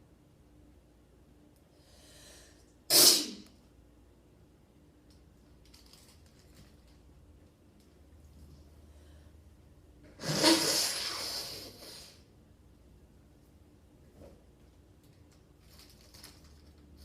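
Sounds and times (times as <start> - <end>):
person sneezing: 2.9 - 3.5, 10.2 - 12.2.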